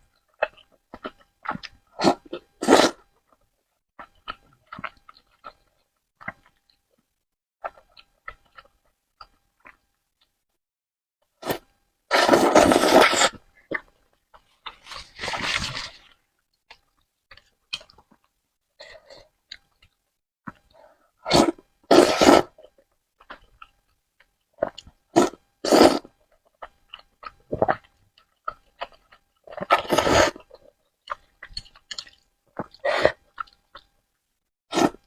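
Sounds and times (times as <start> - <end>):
person slurping noodles: 2.0 - 3.0, 11.4 - 13.4, 21.3 - 22.6, 25.2 - 26.1, 29.5 - 30.5, 34.7 - 35.0
wet chewing clicks: 16.7 - 18.3, 30.4 - 34.0.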